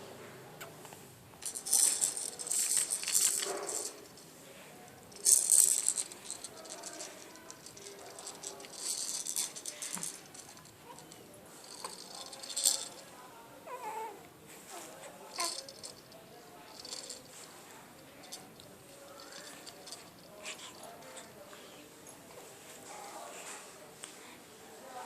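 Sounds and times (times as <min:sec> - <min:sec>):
object rattling when shaken: 0:01.4 - 0:04.3, 0:04.9 - 0:13.1, 0:15.3 - 0:21.3.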